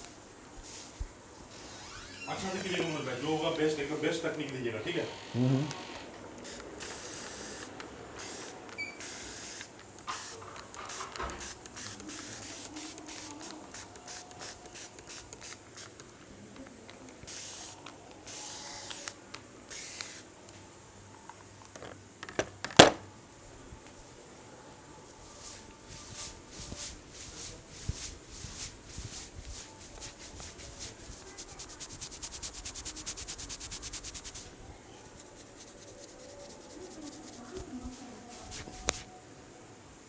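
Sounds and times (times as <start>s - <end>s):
hands rubbing hair: 0.0s - 4.5s, 25.0s - 39.2s.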